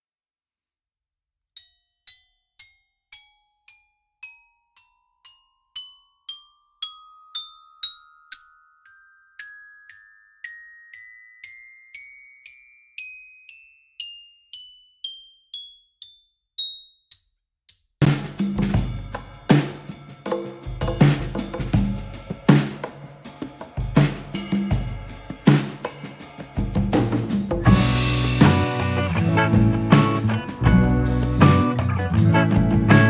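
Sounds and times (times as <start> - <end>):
band with drums: 18.0 - 33.0
bell-like struck notes: 27.6 - 31.8
rising tone: 27.6 - 33.0.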